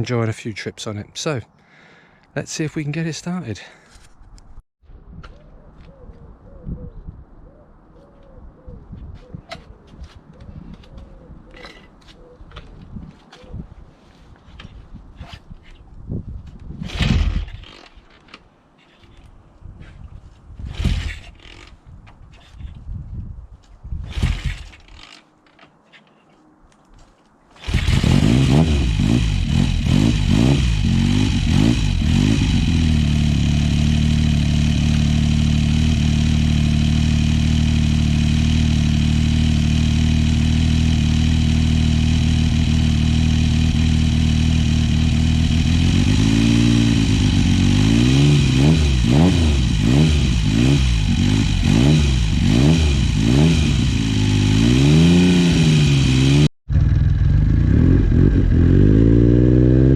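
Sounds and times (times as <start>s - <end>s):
motorcycle engine revving and idling: 20.6s - 21.6s, 27.6s - 59.9s.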